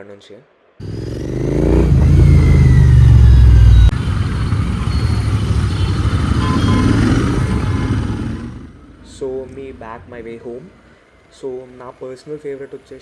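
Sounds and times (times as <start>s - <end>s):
motorcycle engine running: 0.8s - 11.0s
road and traffic noise: 0.8s - 13.0s
faint short beeps: 0.9s - 10.3s.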